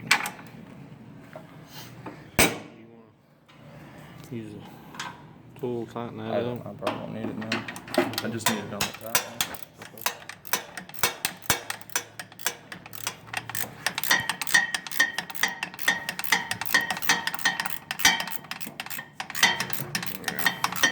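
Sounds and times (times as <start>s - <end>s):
ratchet wrench clicking: 8.2s - 20.9s
ringing metallic tick: 8.5s - 20.9s.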